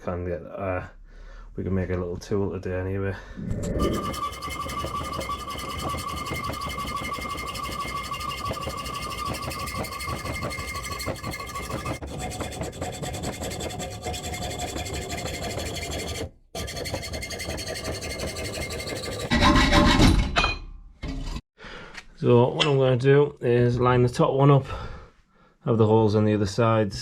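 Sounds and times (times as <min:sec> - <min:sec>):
hand saw rasping: 0:03.8 - 0:19.3.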